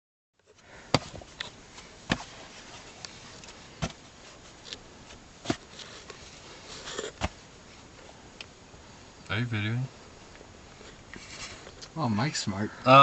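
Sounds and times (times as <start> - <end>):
faint steady hiss: 0.4 - 13.0.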